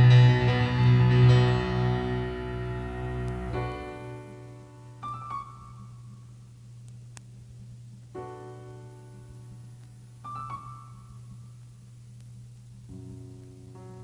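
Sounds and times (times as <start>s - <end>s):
low bass note: 0.0s - 4.4s
keyboard chords: 0.0s - 5.7s.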